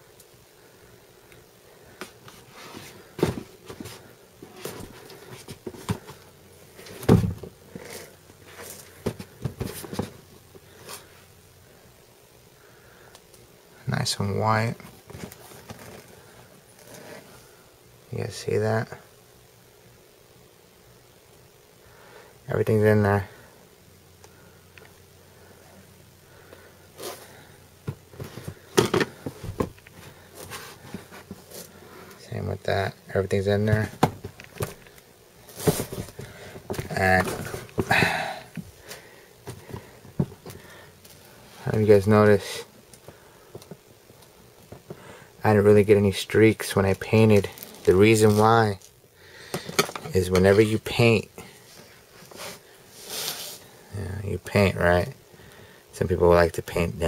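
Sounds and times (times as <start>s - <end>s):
sneaker rustling and knocking: 2.6s - 6.2s, 6.8s - 8.0s, 8.6s - 10.3s, 27.8s - 31.6s, 35.5s - 38.7s
shoe thumps: 7.0s - 7.5s, 35.6s - 38.3s
sneakers knocking and rubbing: 27.9s - 29.8s.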